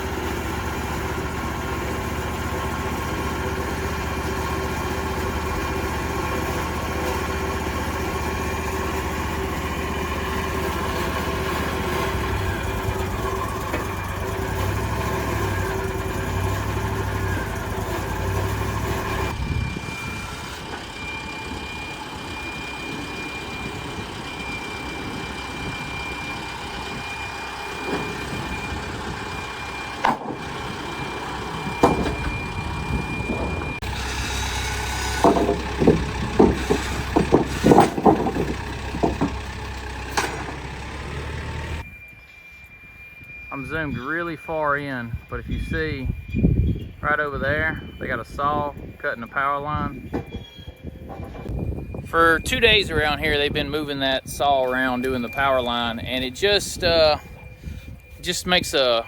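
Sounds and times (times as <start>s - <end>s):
engine idling: 0.0s - 41.9s
high-pitched saw squeal: 11.3s - 39.4s, 41.7s - 53.4s
sharp knocks: 34.0s - 39.4s.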